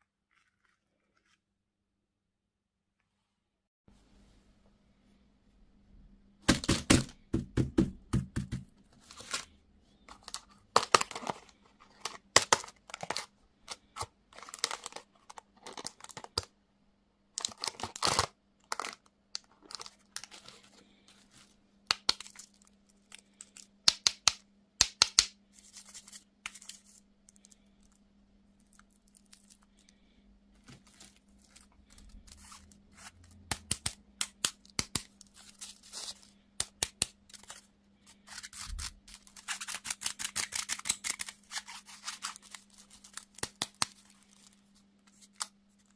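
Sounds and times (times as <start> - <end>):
candy wrappers crinkling and tearing: 10.1 - 16.5, 17.4 - 24.2, 25.6 - 28.0, 28.6 - 45.9.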